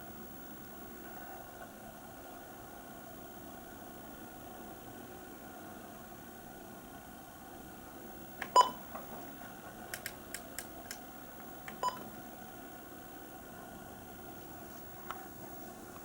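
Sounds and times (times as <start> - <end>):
faint steady hum: 0.0 - 16.0
short electronic beeps: 8.5 - 8.8, 11.8 - 12.1
light clicks: 9.9 - 11.0.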